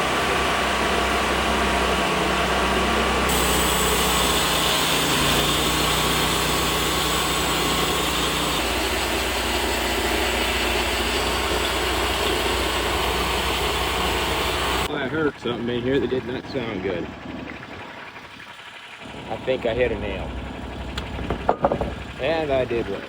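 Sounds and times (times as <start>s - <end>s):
band sawmill cutting log: 0.0s - 18.3s, 19.0s - 23.0s
low hum: 10.1s - 23.0s.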